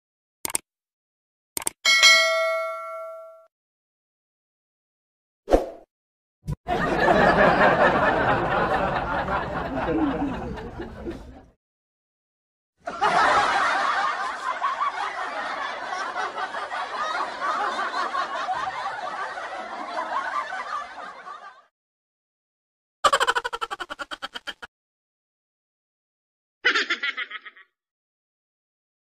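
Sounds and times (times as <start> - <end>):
recorded laughter: 6.7 - 11.6, 12.8 - 21.7, 23.1 - 24.7, 26.6 - 27.7.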